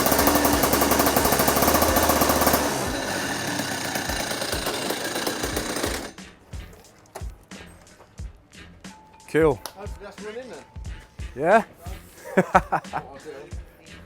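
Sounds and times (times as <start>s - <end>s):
go-kart engine running hard: 0.0s - 6.2s.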